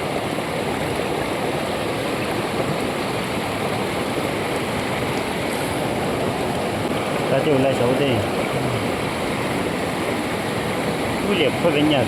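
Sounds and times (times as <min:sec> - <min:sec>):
river rushing: 0:00.0 - 0:12.0.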